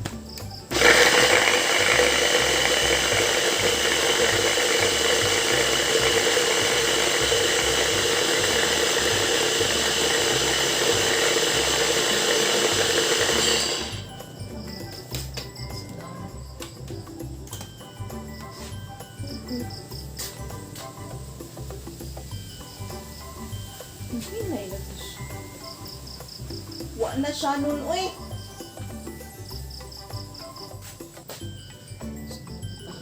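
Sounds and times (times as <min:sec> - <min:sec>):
electric blender running: 0:00.6 - 0:16.1.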